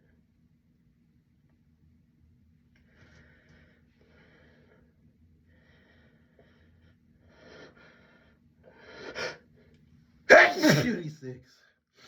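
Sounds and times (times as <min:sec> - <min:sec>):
person sneezing: 0:10.3 - 0:11.1.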